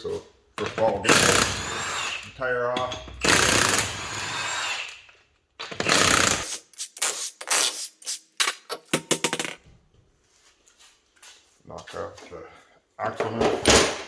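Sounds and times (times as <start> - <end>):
impact wrench running: 1.0 - 5.0, 5.6 - 6.7.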